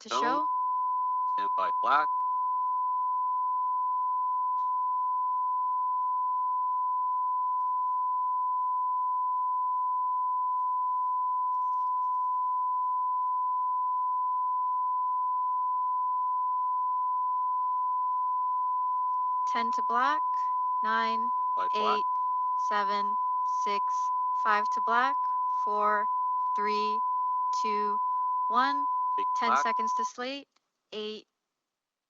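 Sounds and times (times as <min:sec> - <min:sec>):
steady reference tone: 0:00.0 - 0:00.5, 0:19.5 - 0:30.2.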